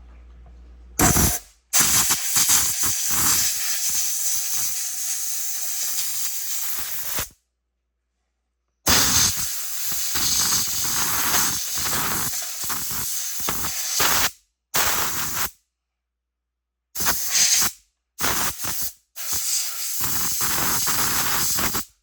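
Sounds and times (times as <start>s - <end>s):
pressurised air jet hissing: 1.0s - 7.3s, 8.9s - 14.3s, 17.0s - 21.9s.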